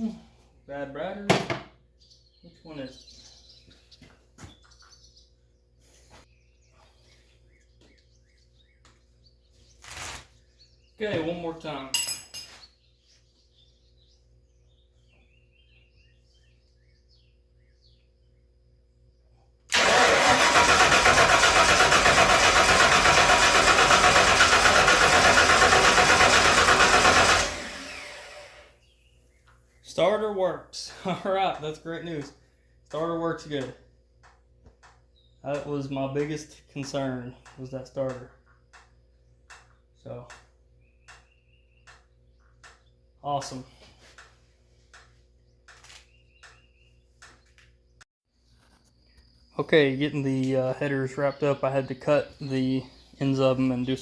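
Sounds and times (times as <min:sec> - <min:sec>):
bird chirping softly: 0:01.9 - 0:11.8, 0:12.4 - 0:19.6, 0:28.8 - 0:54.0
starter motor cranking engine: 0:19.7 - 0:28.8.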